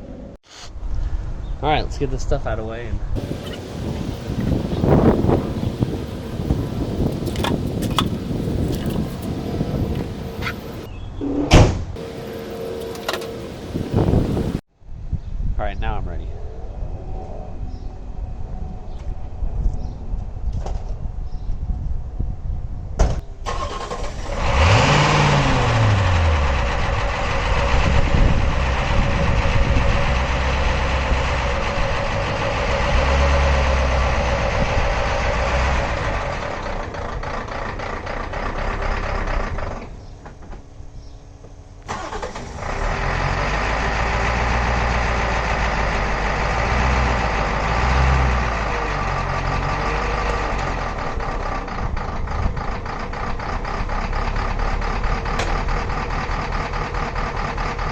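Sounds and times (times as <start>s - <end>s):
diesel engine starting and idling: 3.2s - 10.9s, 12.0s - 14.6s, 23.2s - 40.8s, 41.8s - 57.9s.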